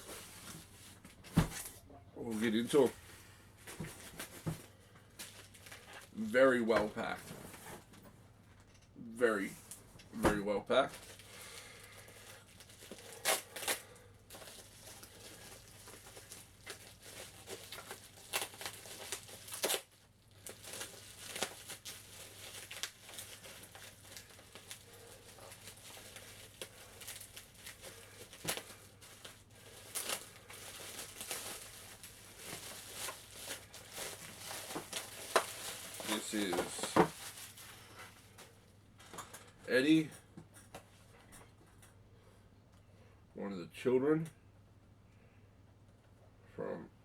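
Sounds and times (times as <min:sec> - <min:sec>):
packing material crinkling: 0:05.1 - 0:06.2, 0:10.7 - 0:39.1.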